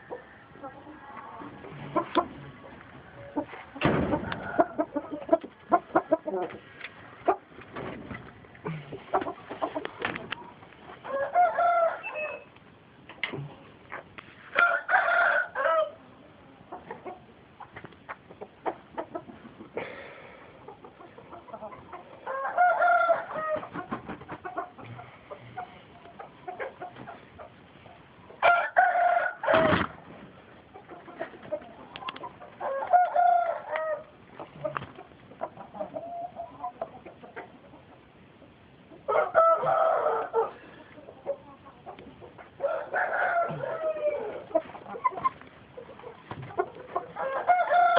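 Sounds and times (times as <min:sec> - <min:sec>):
chickens clucking: 0:00.0 - 0:47.9
roosters crowing: 0:04.1 - 0:05.0, 0:11.0 - 0:12.5, 0:14.5 - 0:16.0, 0:22.2 - 0:23.7, 0:28.4 - 0:29.9, 0:32.6 - 0:34.1, 0:39.1 - 0:40.7, 0:42.6 - 0:44.5, 0:47.0 - 0:47.9.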